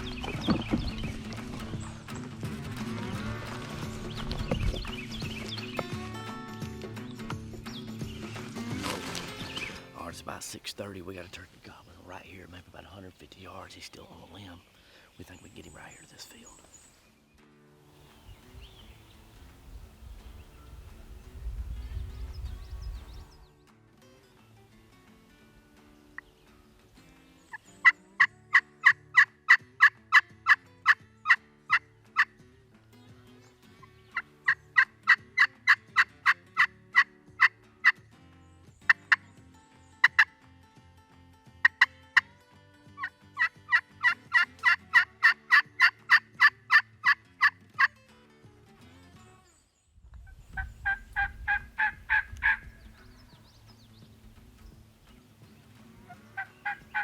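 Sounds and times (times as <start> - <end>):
faint background music: 0.0 - 57.0
turkey call yelping: 43.0 - 47.5, 50.6 - 52.6, 56.4 - 57.0.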